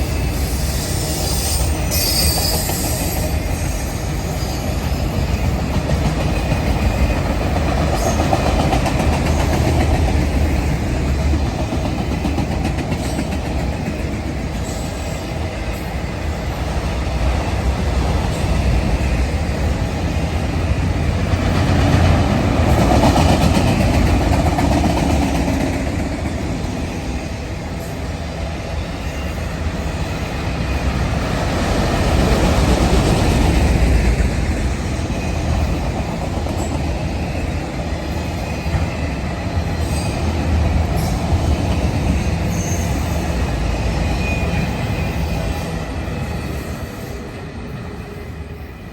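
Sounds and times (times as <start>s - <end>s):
train wheels rumbling on rail: 0.0s - 48.9s.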